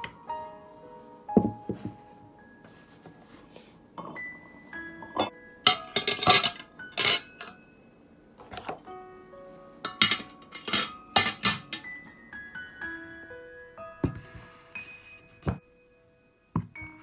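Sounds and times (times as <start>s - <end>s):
soft piano music: 0.0s - 17.0s
dishes and glassware clinking: 4.0s - 4.3s, 5.0s - 7.6s, 8.4s - 9.0s, 9.9s - 12.0s.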